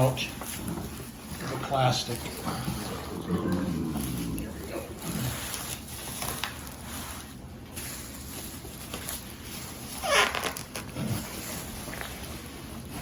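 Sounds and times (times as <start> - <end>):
plastic wrapping rustling: 0.0 - 13.0
plastic squeak: 10.0 - 10.7.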